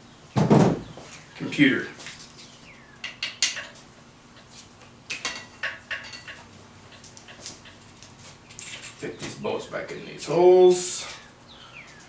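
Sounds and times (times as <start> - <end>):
light metallic clinks: 5.3 - 7.9.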